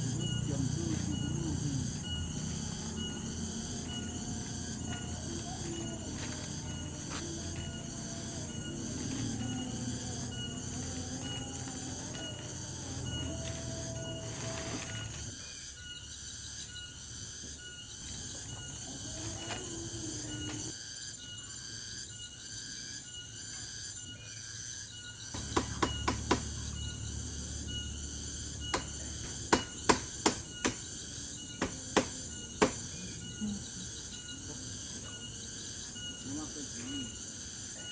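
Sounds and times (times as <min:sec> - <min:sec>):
insects chirping: 0:00.0 - 0:37.9
sharp knocks: 0:25.4 - 0:26.8, 0:28.7 - 0:30.9, 0:31.6 - 0:32.9.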